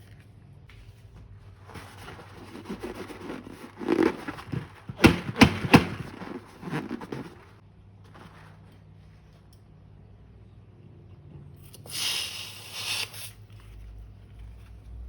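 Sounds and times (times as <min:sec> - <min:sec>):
slime squishing and rustling: 0:00.8 - 0:09.0.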